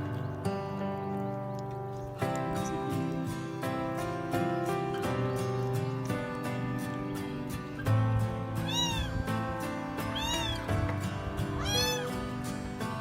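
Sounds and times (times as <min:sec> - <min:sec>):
cat meowing: 0:08.5 - 0:09.4, 0:10.0 - 0:10.9, 0:11.5 - 0:12.3.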